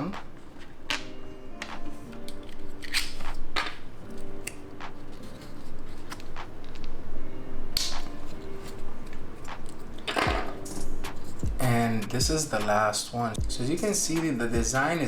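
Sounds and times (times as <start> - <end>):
plastic rustle: 0.0 - 7.0
plastic packaging crinkling: 0.0 - 7.2
soft background music: 0.0 - 15.0.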